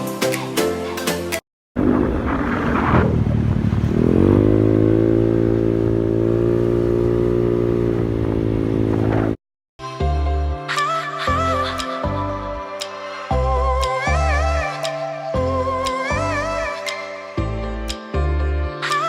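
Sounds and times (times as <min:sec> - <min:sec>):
engine speeding up: 0:01.8 - 0:09.4.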